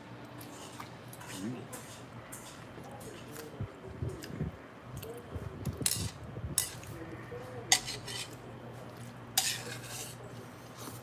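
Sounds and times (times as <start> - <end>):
utensils clinking against a bowl: 0.4 - 3.5, 5.8 - 6.9, 7.7 - 8.4, 9.4 - 10.3.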